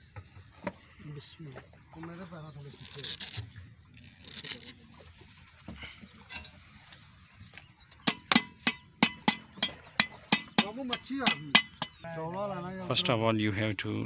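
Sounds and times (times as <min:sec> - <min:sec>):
sharp ringing metallic strikes: 0:08.0 - 0:12.0.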